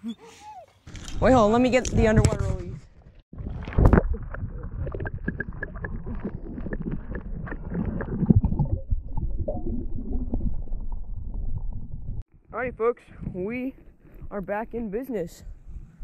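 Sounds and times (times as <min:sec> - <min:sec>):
underwater gurgling and sloshing: 0:02.9 - 0:12.3
bubbles knocking and crackling: 0:03.0 - 0:12.2.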